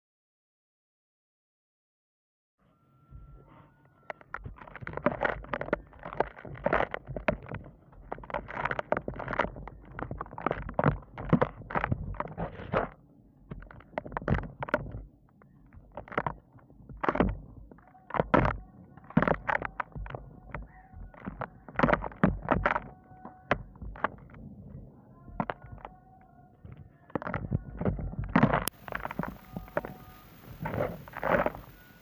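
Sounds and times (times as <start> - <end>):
gritty material crunching: 4.1 - 32.0.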